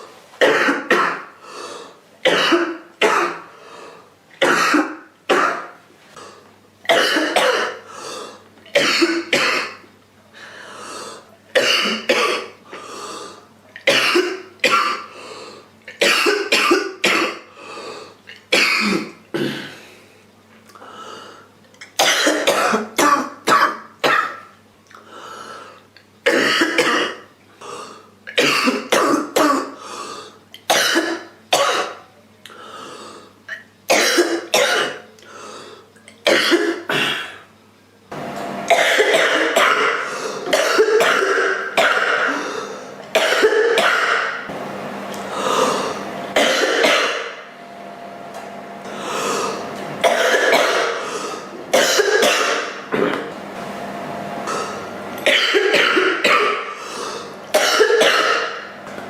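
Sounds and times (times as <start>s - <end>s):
girl coughing: 0.4s - 1.3s, 2.2s - 3.5s, 4.4s - 5.8s, 6.9s - 7.9s, 8.8s - 9.8s, 11.6s - 12.6s, 13.9s - 15.1s, 16.0s - 17.5s, 18.5s - 19.7s, 22.0s - 24.5s, 26.3s - 27.3s, 28.3s - 29.8s, 30.7s - 32.0s, 33.5s - 35.1s, 36.2s - 37.5s, 38.7s - 42.6s, 43.2s - 44.4s, 46.4s - 47.4s, 50.0s - 51.0s, 51.7s - 52.8s, 55.2s - 56.8s, 57.5s - 58.7s.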